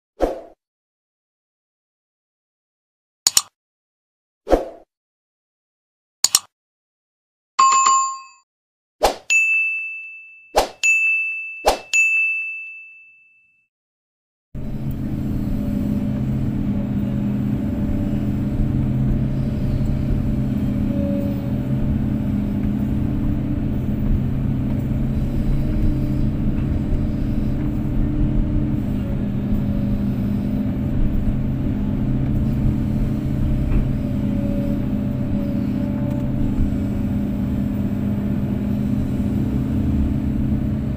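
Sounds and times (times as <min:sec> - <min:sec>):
bright chime ding: 0:09.3 - 0:13.6
excavator diesel engine running: 0:14.6 - 0:40.9
faint engine whine: 0:14.6 - 0:40.9.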